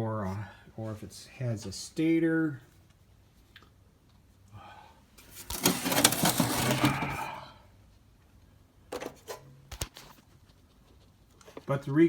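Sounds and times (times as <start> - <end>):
hard objects clattering and scraping: 5.2 - 7.4.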